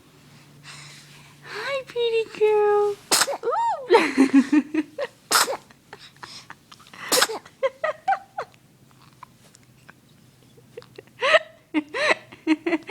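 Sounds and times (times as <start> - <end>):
baby sneezing: 3.1 - 3.5, 5.3 - 5.7, 7.1 - 7.5.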